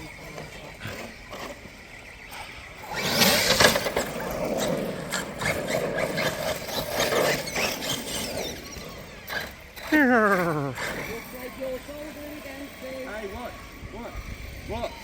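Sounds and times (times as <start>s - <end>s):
rc car driving over rough ground: 0.0s - 15.0s.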